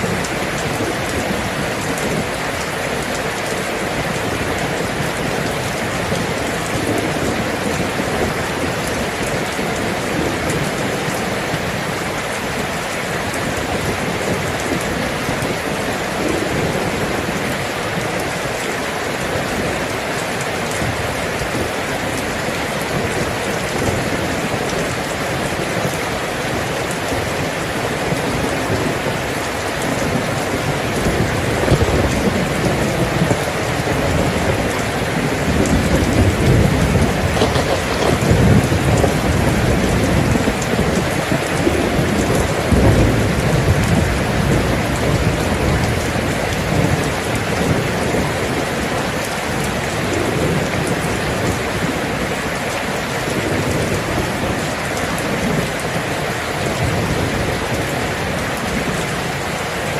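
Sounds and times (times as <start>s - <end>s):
steady rain falling: 0.0s - 59.9s
rolling thunder rumble: 28.0s - 48.6s.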